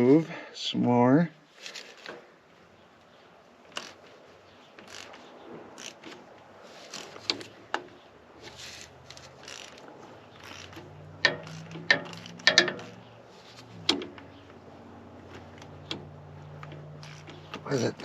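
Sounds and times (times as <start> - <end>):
socket ratchet clicking: 10.4 - 13.0
metallic clanks of tool: 10.5 - 13.0.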